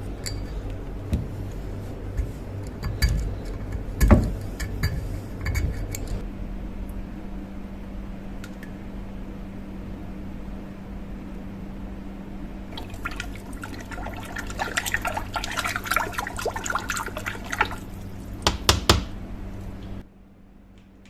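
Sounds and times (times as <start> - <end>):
water splashing and dripping: 12.7 - 18.4.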